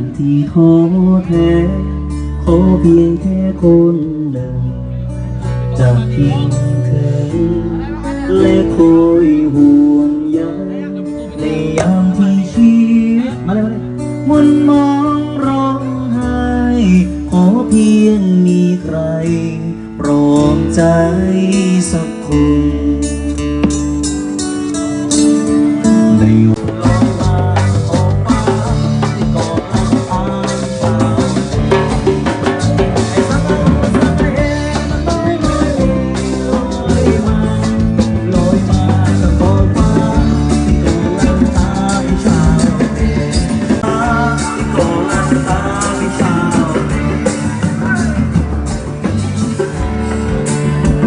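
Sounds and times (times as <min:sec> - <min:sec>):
live rock band playing: 0:00.0 - 0:51.0.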